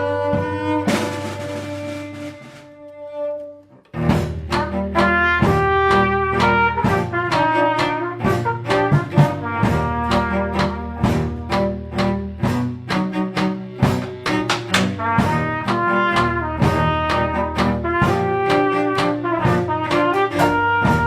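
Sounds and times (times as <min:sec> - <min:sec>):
held musical notes: 0:00.0 - 0:21.0.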